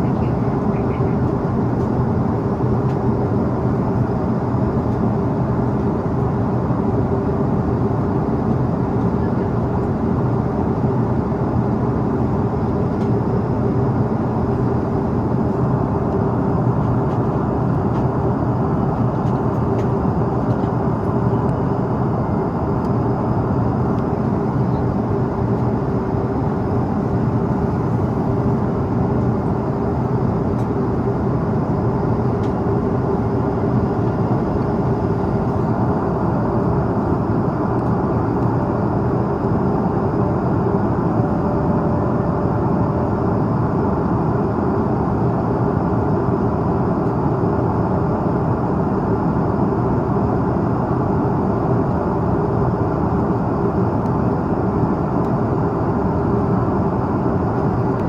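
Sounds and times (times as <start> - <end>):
constant hum: 0.0 - 58.0
engine and airflow rush: 0.0 - 58.0.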